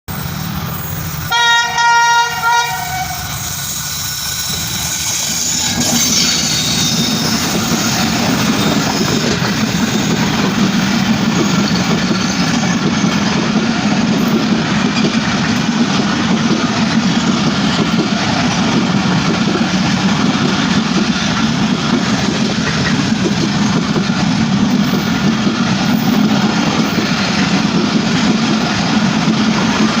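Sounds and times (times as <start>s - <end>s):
train rumbling along rails: 0.1s - 30.0s
train horn blasts: 1.3s - 3.5s.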